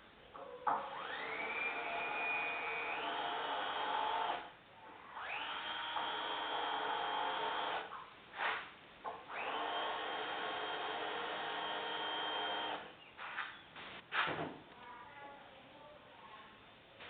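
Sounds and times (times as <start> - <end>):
power drill motor running: 0.8 - 4.5, 5.2 - 7.9, 9.3 - 12.9.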